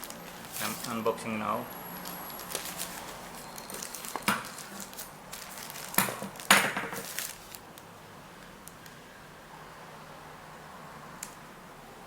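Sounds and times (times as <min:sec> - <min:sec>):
packaging rustling and clicks: 0:00.0 - 0:01.1, 0:02.0 - 0:07.6.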